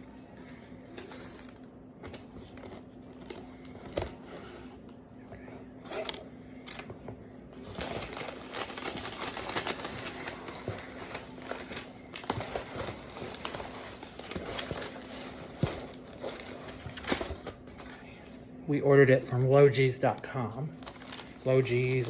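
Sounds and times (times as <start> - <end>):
packing material crinkling: 7.6 - 17.6, 20.0 - 22.0.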